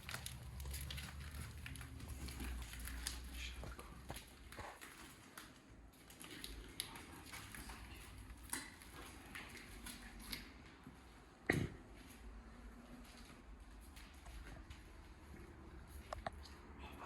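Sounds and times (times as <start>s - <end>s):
footsteps crunching over debris: 0.0s - 11.2s.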